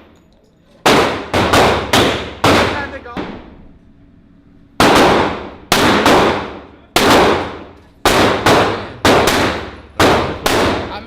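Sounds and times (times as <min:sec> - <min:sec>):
gunshots with ringing echo: 0:00.8 - 0:02.9, 0:04.8 - 0:10.9.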